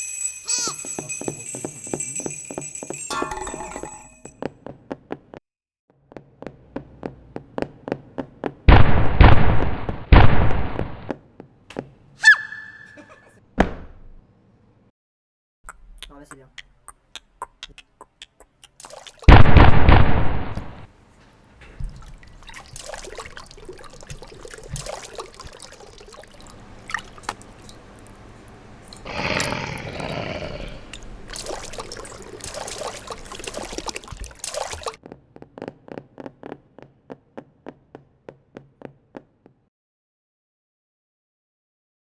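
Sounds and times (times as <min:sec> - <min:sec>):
regular ticking: 0:15.7 - 0:19.3.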